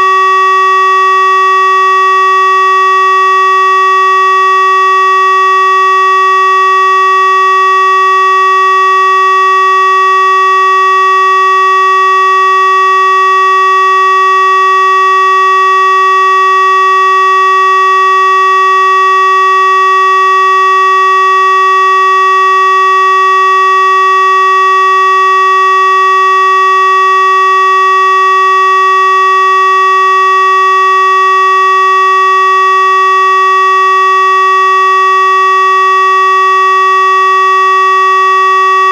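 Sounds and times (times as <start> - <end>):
steady warning siren tone: 0.0 - 38.9.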